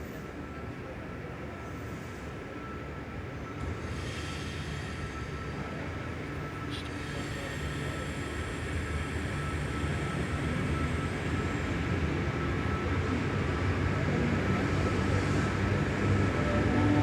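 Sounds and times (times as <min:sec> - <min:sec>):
thin steady whine: 0:04.2 - 0:17.0
train rumbling: 0:14.4 - 0:17.0.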